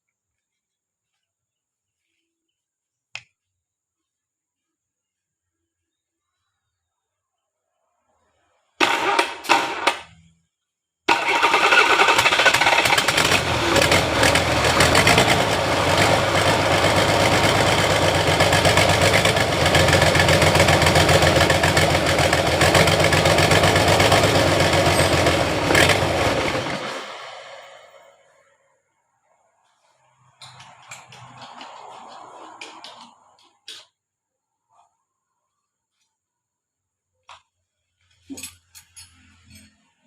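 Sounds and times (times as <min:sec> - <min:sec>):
engine starting and running: 0:08.8 - 0:10.1, 0:11.1 - 0:28.4.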